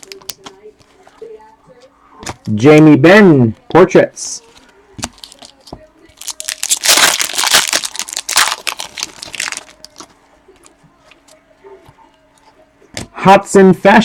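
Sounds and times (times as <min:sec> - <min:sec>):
wrapper crinkling: 0:00.0 - 0:01.0, 0:04.4 - 0:11.4.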